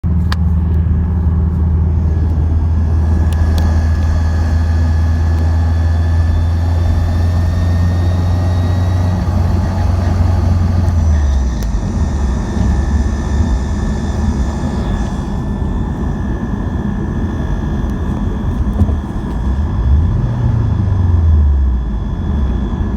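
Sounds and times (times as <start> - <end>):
car engine low drone: 0.0 - 22.9
high whine: 0.0 - 22.9.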